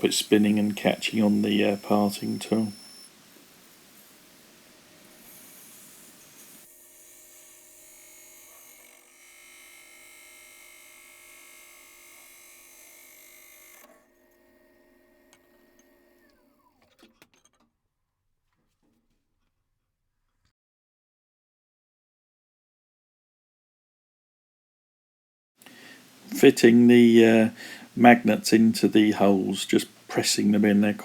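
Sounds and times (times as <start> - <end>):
parting tool hissing through wood: 0.0 - 6.7
lathe motor whine: 0.0 - 16.9.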